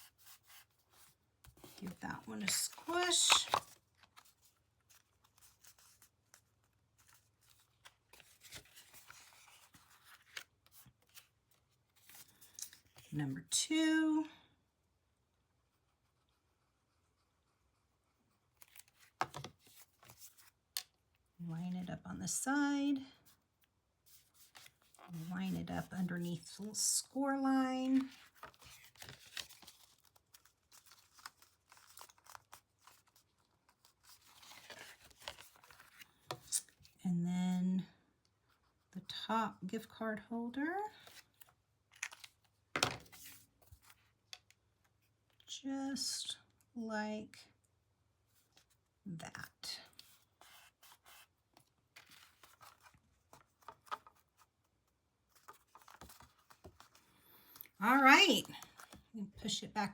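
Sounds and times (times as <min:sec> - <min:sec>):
cardstock rustling: 0:00.0 - 0:13.0, 0:27.8 - 0:36.7, 0:49.9 - 0:57.2.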